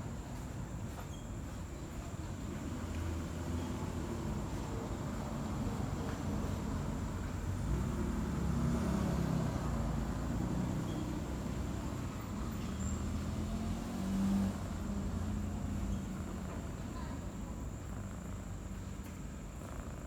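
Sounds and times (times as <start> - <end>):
cat purring: 15.8 - 20.0.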